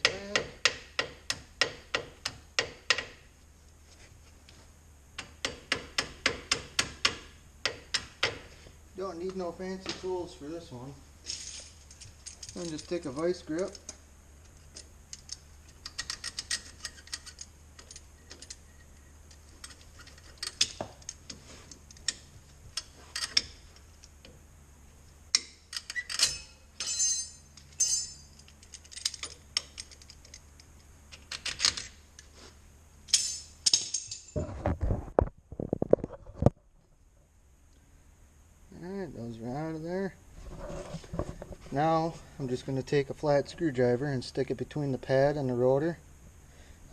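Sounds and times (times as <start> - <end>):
pliers clicking and scraping metal: 11.9 - 18.6.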